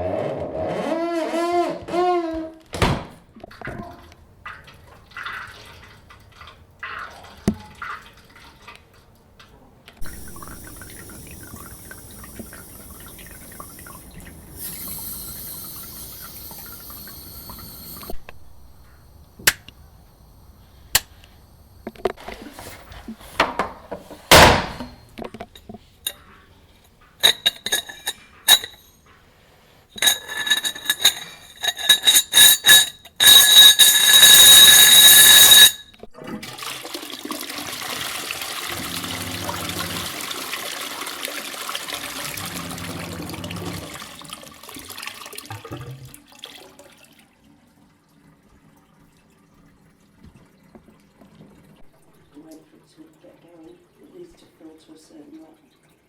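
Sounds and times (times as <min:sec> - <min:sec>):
running water hiss: 0:10.0 - 0:25.1, 0:38.3 - 0:40.6
short clatter: 0:27.2 - 0:29.0, 0:30.0 - 0:36.0.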